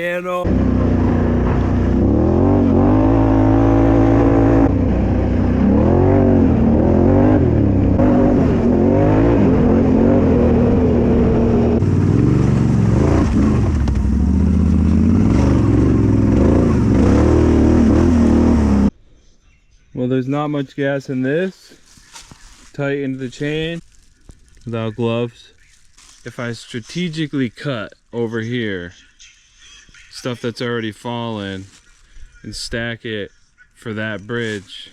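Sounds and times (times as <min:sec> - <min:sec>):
off-road vehicle engine revving: 0:00.4 - 0:18.9.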